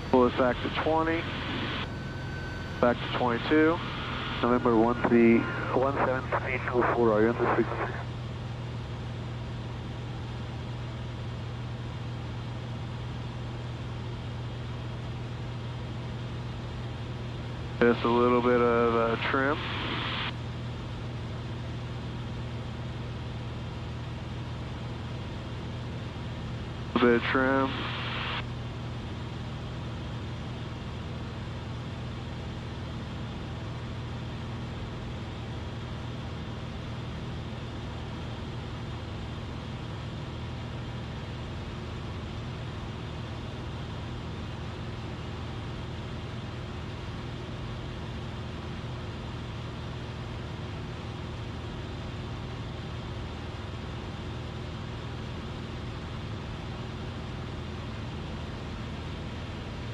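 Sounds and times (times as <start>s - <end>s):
aircraft engine and propeller droning: 0.0s - 6.6s.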